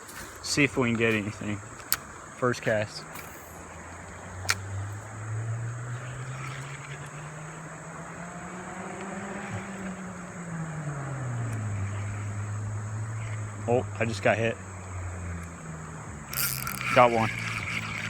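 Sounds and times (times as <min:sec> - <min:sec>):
high insect drone: 0:00.0 - 0:18.0
vehicle engine humming: 0:00.0 - 0:18.0
sharp click: 0:02.7 - 0:03.6, 0:16.3 - 0:18.0.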